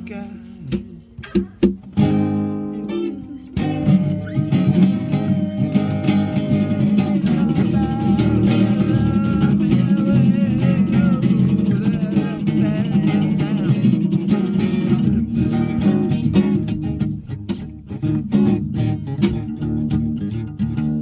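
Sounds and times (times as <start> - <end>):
acoustic guitar strumming: 0.0 - 21.0
wavering melody line: 3.3 - 13.0.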